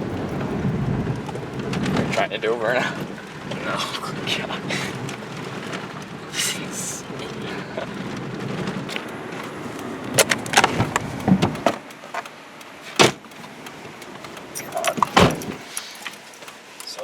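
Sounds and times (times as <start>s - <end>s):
car running rumble: 0.0s - 17.0s
car door thump: 10.2s - 11.8s, 12.9s - 13.3s, 14.9s - 15.6s.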